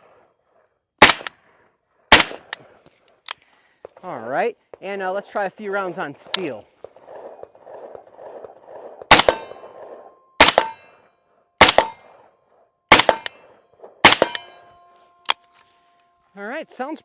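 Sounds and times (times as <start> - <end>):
suppressed rifle shots: 1.0 - 1.3, 2.1 - 2.6, 9.1 - 10.8, 11.6 - 12.0, 12.9 - 13.4, 14.0 - 14.6
bullet clanging on steel target: 10.4 - 10.9, 11.6 - 12.2, 13.0 - 13.5, 14.1 - 14.8.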